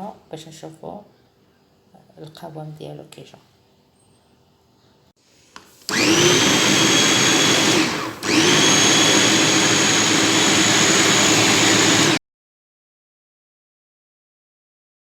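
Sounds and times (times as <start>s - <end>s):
blender motor whine: 5.9s - 12.2s.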